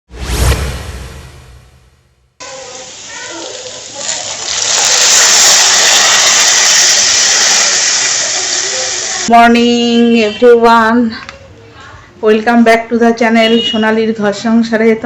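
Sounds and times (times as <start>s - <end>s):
loud hissing rush: 4.6s - 9.3s.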